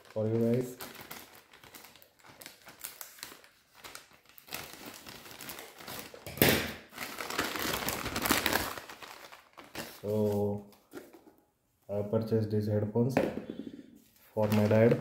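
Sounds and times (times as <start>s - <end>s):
loud packaging rustle: 0.0s - 11.2s, 14.1s - 15.0s
packaging crinkling: 0.0s - 11.2s, 14.2s - 15.0s.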